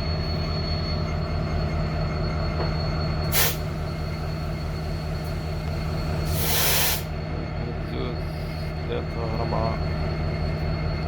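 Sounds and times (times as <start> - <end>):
freight train rumbling past: 0.0 - 11.0
high-pitched wheel squeal: 0.0 - 11.0
burst of hiss: 3.3 - 3.6, 6.3 - 7.1.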